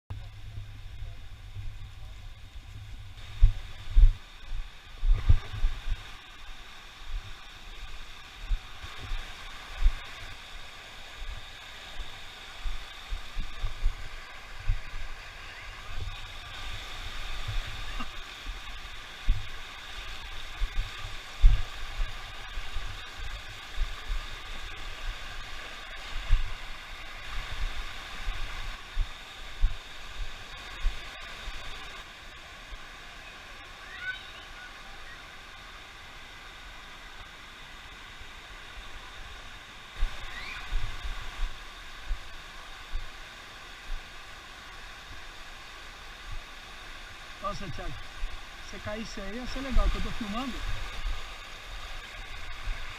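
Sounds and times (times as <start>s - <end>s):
waterfall rushing: 0.3s - 52.9s
low thuds on microphone: 5.0s - 5.7s.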